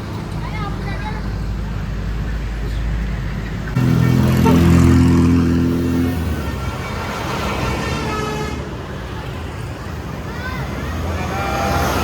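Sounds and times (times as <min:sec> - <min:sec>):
bus engine passing: 0:00.0 - 0:12.0
road noise: 0:00.0 - 0:12.0
bus horn deep chord: 0:03.8 - 0:05.0, 0:07.8 - 0:08.7.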